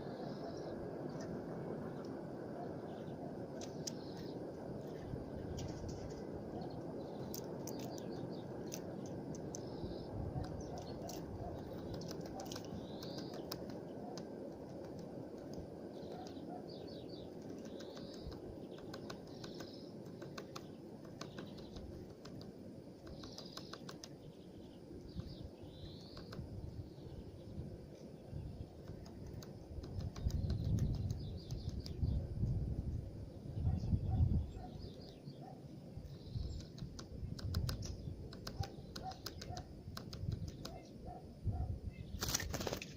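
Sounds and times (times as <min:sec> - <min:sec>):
bird chirping calls: 0:00.0 - 0:32.3, 0:33.3 - 0:42.8
birds pecking food: 0:03.4 - 0:27.2, 0:27.8 - 0:32.1, 0:36.3 - 0:41.0.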